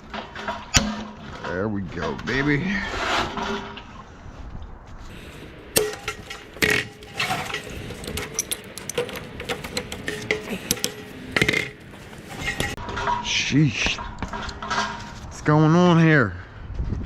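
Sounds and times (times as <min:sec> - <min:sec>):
metal tools clanking: 0:05.2 - 0:15.2.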